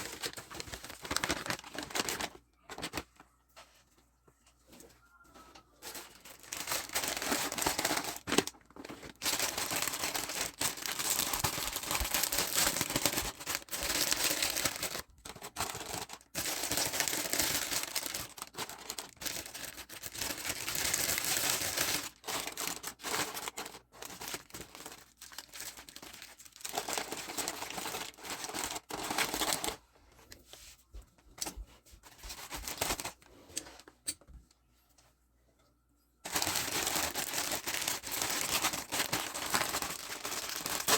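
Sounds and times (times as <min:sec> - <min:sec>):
packaging crinkling and tearing: 0:00.0 - 0:03.1, 0:05.8 - 0:29.8, 0:32.2 - 0:33.2, 0:36.3 - 0:40.9.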